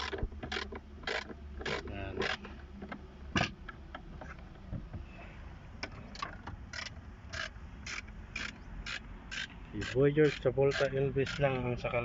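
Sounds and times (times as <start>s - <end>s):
ratchet wrench clicking: 0.0s - 2.4s, 6.7s - 11.6s.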